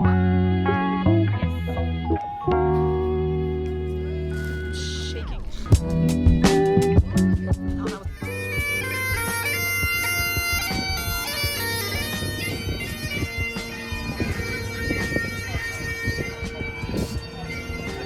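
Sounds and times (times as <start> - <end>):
bagpipe drones: 1.3 - 18.0
bagpipes playing a melody: 5.8 - 18.0.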